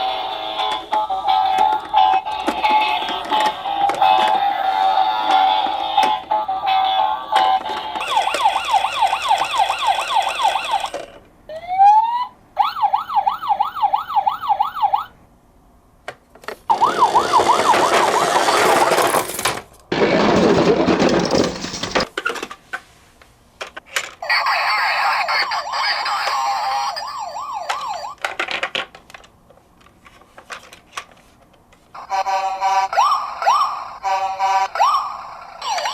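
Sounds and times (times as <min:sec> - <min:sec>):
electronic yelp siren: 0:08.0 - 0:15.1, 0:16.7 - 0:18.7, 0:24.3 - 0:28.2, 0:32.0 - 0:35.9
noisy clatter: 0:16.7 - 0:22.5.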